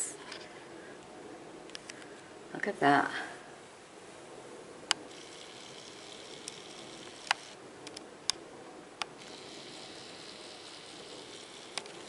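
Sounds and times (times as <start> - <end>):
faint room hiss: 0.0 - 12.0
sharp clicks: 4.9 - 8.4, 11.5 - 12.0.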